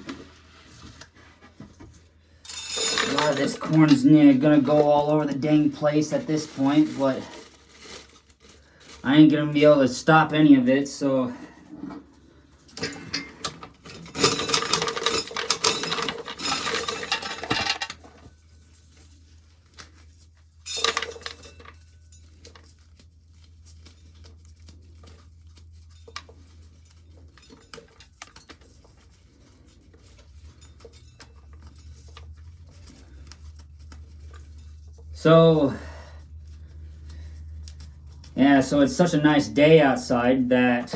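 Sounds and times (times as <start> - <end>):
corn kernels rattling into tin can: 2.5 - 9.3, 12.8 - 18.3, 20.7 - 21.8.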